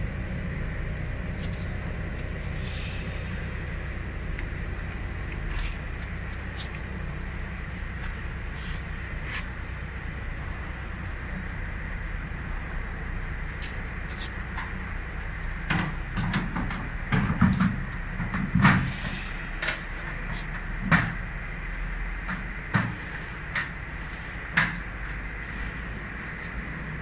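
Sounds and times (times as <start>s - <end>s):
steady low hum: 0.0s - 27.0s
knocks and clatter of machine parts: 15.6s - 21.3s, 22.2s - 23.8s.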